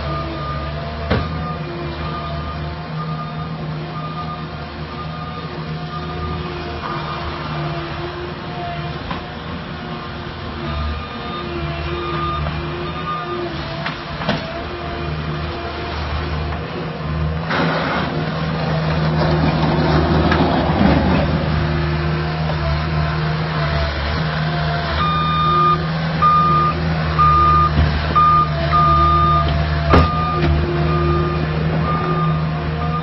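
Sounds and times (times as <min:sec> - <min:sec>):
diesel engine running: 0:00.0 - 0:33.0
reversing alarm beeping: 0:00.1 - 0:07.1, 0:10.9 - 0:13.5, 0:24.9 - 0:33.0
sharp clunk: 0:29.9 - 0:30.6.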